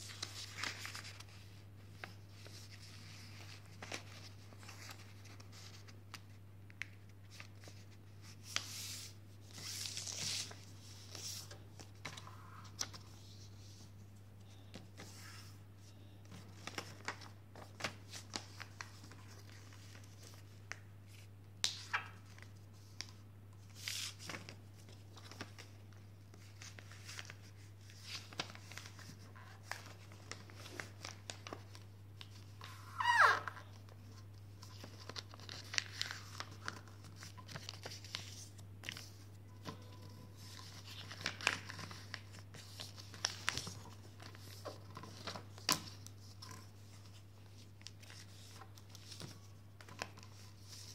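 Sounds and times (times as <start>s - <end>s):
paper rustling and crinkling: 0.0s - 32.8s, 33.7s - 50.9s
low electrical hum: 0.0s - 50.9s
squeak falling in pitch: 32.8s - 33.6s.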